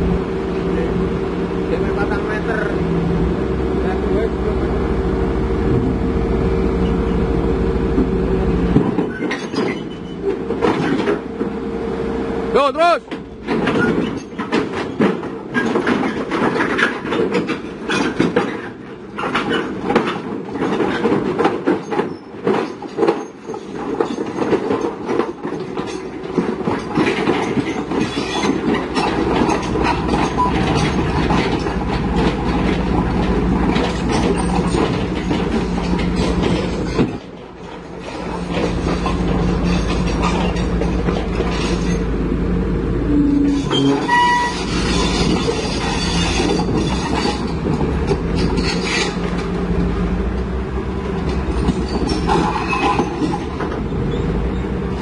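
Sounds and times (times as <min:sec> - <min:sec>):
low engine hum: 0:00.0 - 0:15.0, 0:27.9 - 0:55.0
metallic clatter and rattle: 0:08.8 - 0:11.2, 0:13.1 - 0:42.1, 0:43.5 - 0:49.6, 0:51.1 - 0:55.0.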